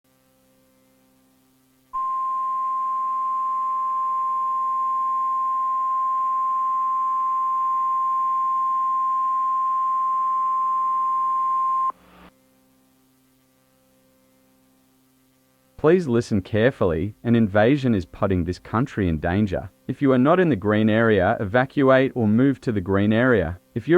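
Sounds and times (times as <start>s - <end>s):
faint low hum and hiss: 8.5s - 23.9s.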